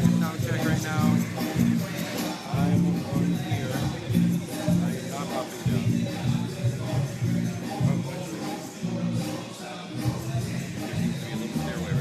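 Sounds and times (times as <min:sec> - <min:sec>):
bass riff: 0:00.0 - 0:02.0, 0:02.6 - 0:05.1.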